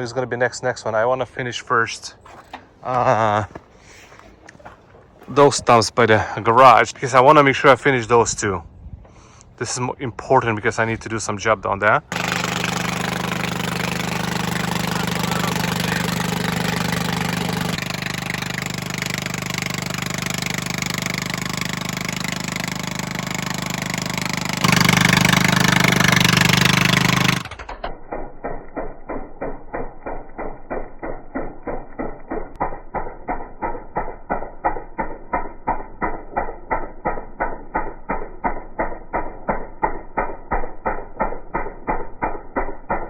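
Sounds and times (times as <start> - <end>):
stump grinder grinding: 12.0 - 43.0.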